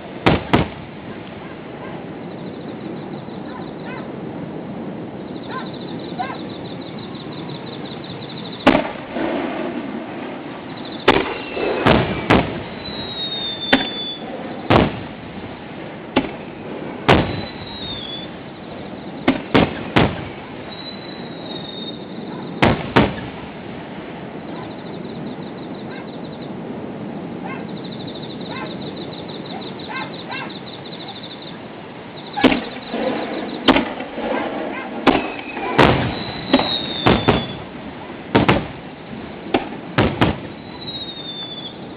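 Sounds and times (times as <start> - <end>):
firework shells booming: 0.0 - 2.2, 8.2 - 23.7, 32.2 - 41.8
firework crackling: 0.0 - 41.9
firework whistles: 1.7 - 4.2, 5.0 - 15.2, 15.8 - 23.5, 24.4 - 26.6, 27.5 - 38.8, 39.5 - 41.9.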